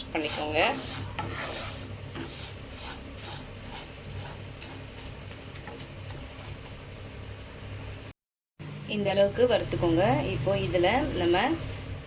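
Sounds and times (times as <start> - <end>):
spatula scraping a pan: 0.0 - 6.6.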